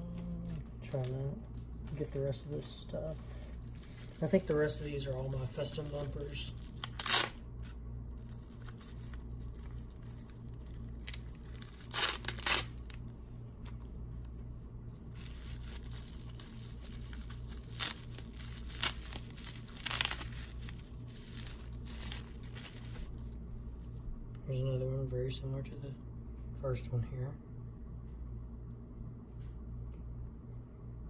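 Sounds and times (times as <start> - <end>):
plastic packaging crinkling: 3.1 - 13.9, 15.1 - 24.1.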